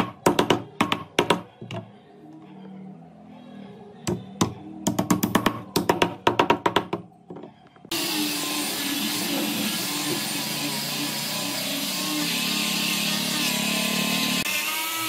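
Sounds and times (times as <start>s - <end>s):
power tool running with whine: 7.9s - 15.0s.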